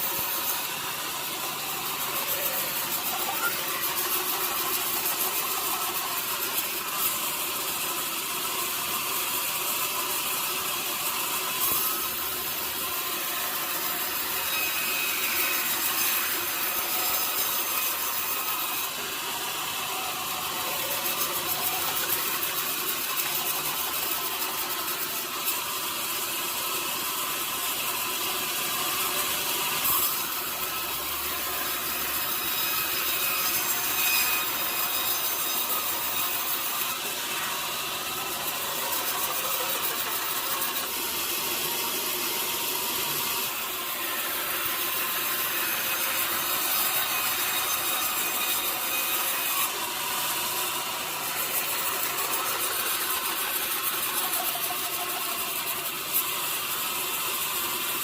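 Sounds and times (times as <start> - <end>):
sawmill saw cutting log: 0.0 - 58.0.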